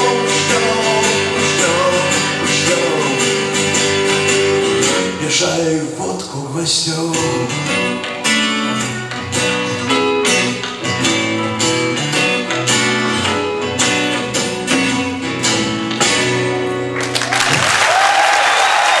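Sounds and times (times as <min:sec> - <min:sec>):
guitars strumming: 0:00.0 - 0:17.8
audience applause: 0:16.9 - 0:19.0.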